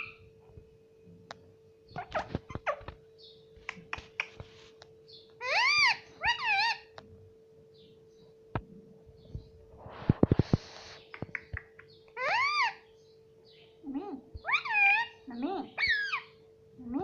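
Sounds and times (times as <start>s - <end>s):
parrot calls: 0.0s - 0.2s, 2.0s - 3.0s, 5.4s - 7.0s, 11.3s - 12.9s, 13.8s - 17.0s.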